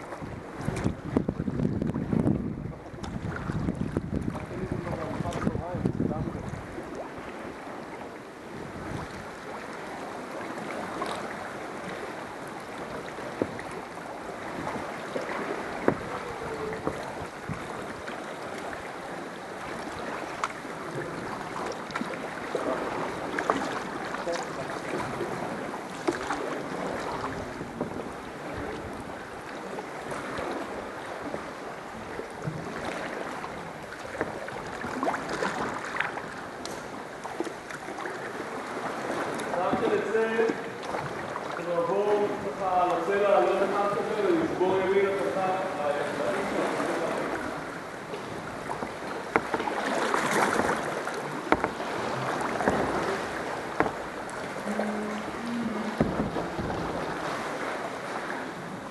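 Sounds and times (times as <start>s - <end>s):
wind noise on microphone: 0.0s - 6.8s, 8.5s - 9.3s, 52.1s - 57.6s
paddle splashes: 0.0s - 58.9s
water sloshing around hull: 0.0s - 58.9s.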